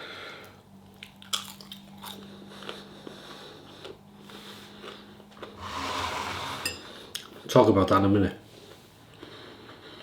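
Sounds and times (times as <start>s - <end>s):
person chewing food: 0.9s - 5.6s.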